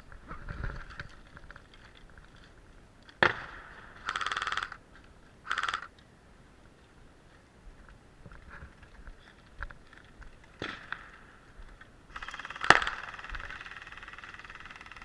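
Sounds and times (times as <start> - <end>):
rustling of movement: 0.0 - 3.2
airsoft gun full-auto bursts: 4.0 - 4.8, 5.5 - 5.9, 12.1 - 15.0.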